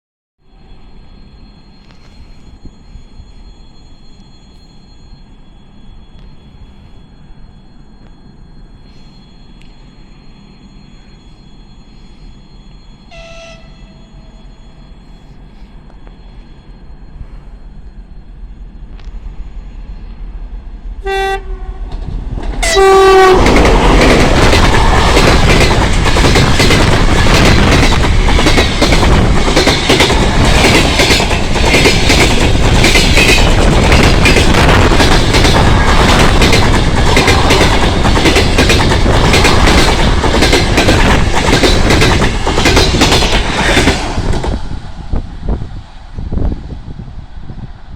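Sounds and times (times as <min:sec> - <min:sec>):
train rushing past: 0:00.4 - 0:47.9
diesel locomotive rumbling: 0:00.5 - 0:47.9
train horn blasts: 0:13.0 - 0:14.4, 0:21.0 - 0:22.0, 0:22.6 - 0:23.6.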